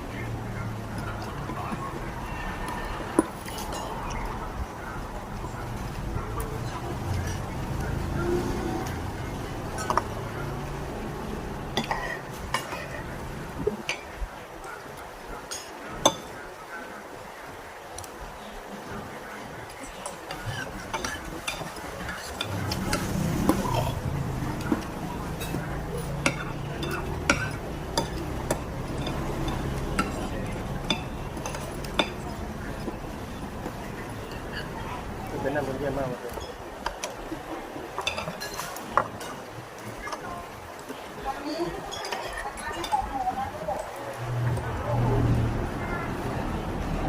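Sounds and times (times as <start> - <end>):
cutlery clinking against plate: 11.8 - 13.0, 20.1 - 33.0, 38.0 - 39.5.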